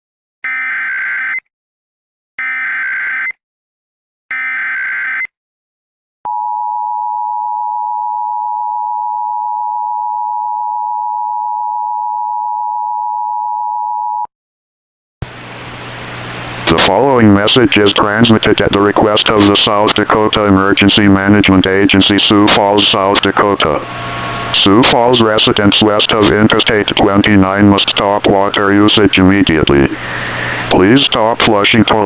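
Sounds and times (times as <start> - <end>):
steady attention tone: 15.7 - 32.0.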